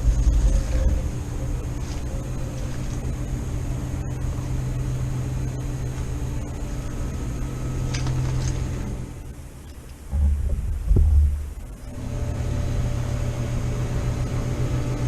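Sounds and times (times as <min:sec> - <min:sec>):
faint high whine: 0:00.0 - 0:15.0
low mechanical hum: 0:00.0 - 0:15.0.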